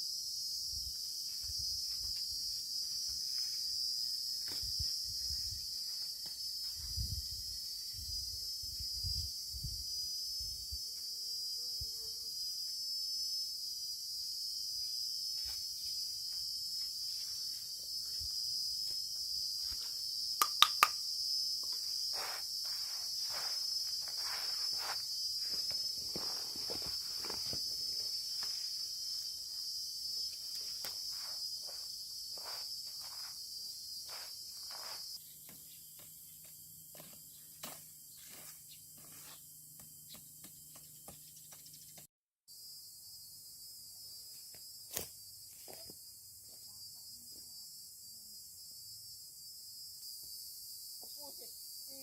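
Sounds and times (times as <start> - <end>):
high-pitched insect chorus: 0.0 - 52.0
sharp clicks: 20.4 - 21.0.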